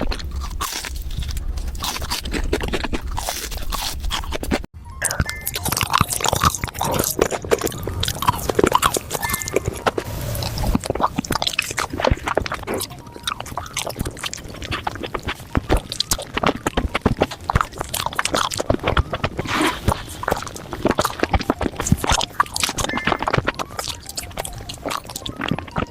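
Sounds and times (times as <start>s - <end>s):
crunching and chewing: 0.0s - 4.7s, 5.5s - 25.9s
scraping: 0.0s - 4.7s.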